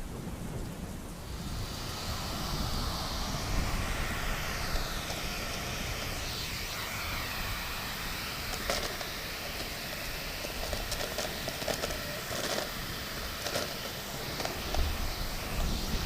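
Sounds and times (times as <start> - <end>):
heavy rain hiss: 0.0 - 16.0
low rumble: 0.4 - 10.8
vacuum cleaner running: 1.2 - 16.0.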